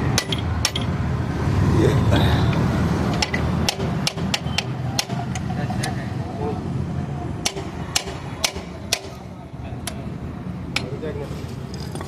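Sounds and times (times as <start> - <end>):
metallic tool knocks and clicks: 3.1 - 6.0.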